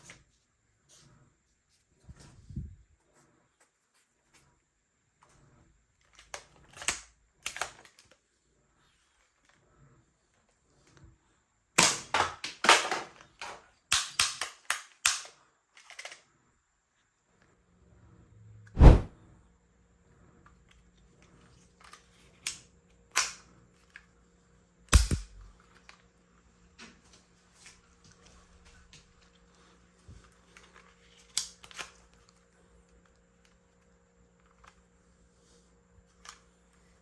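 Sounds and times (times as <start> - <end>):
toy gun shots: 11.8 - 13.0, 24.9 - 25.5
toy gun mechanical clicks: 13.5 - 16.2, 24.9 - 25.5.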